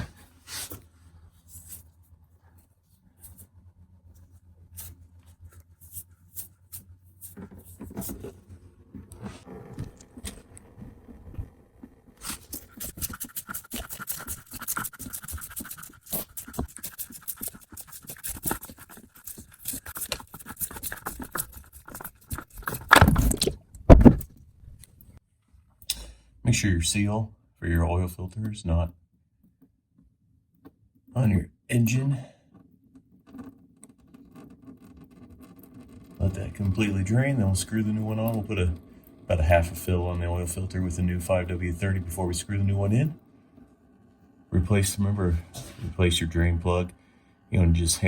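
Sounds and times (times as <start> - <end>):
oil filter scraping and clicking: 12.2 - 23.6, 32.4 - 43.1.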